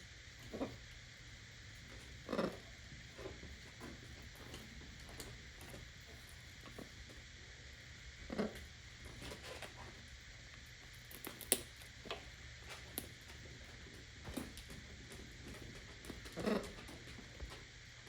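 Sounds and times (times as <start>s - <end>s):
parrot cracking nut shell: 10.9s - 12.2s.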